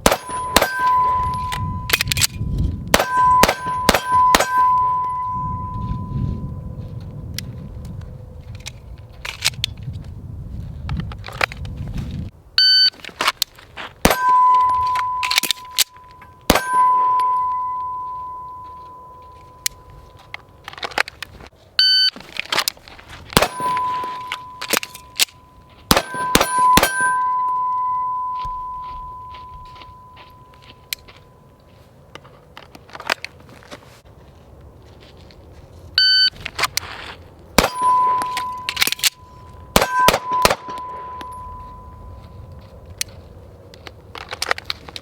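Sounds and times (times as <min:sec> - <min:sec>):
pistol fire: 0:00.0 - 0:02.2, 0:02.9 - 0:04.7, 0:14.0 - 0:14.3, 0:16.5 - 0:17.2, 0:23.4 - 0:24.8, 0:25.9 - 0:27.2, 0:37.6 - 0:38.0, 0:39.7 - 0:41.2
steel targets ringing: 0:00.0 - 0:06.6, 0:14.0 - 0:20.6, 0:23.4 - 0:31.4, 0:37.6 - 0:42.5
shot timer beep: 0:00.1 - 0:02.1, 0:03.0 - 0:06.6, 0:14.1 - 0:19.8, 0:23.4 - 0:30.9, 0:36.0 - 0:36.3, 0:37.6 - 0:42.2.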